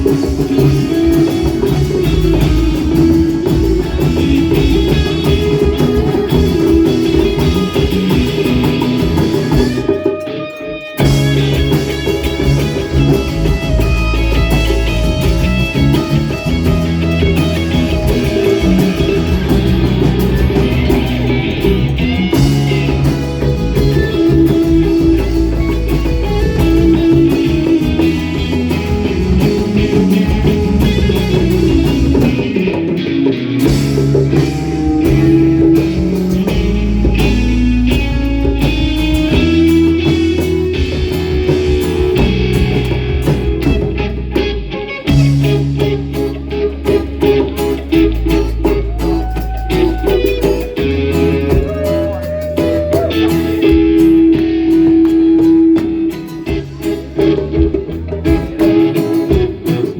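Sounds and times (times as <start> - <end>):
rock band playing instrumental: 0.0 - 59.9.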